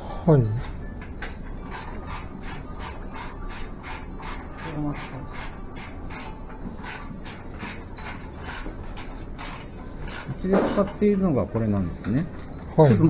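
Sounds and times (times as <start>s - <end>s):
ratchet wrench clicking: 1.7s - 11.0s.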